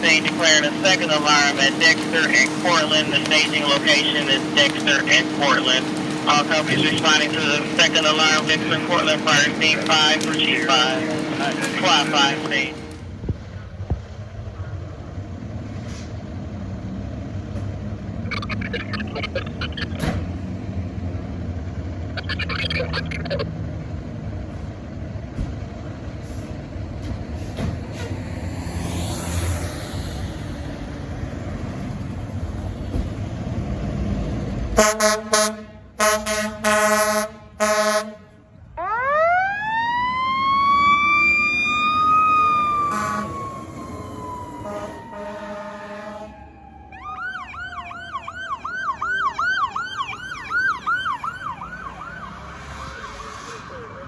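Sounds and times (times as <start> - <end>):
fire engine air horn blasts: 0.0 - 13.1, 34.8 - 38.4, 42.6 - 46.6
heavy truck engine rumble: 0.0 - 54.0
road noise: 0.0 - 54.0
electronic siren yelping: 38.8 - 54.0
siren tone sliding down: 38.8 - 54.0.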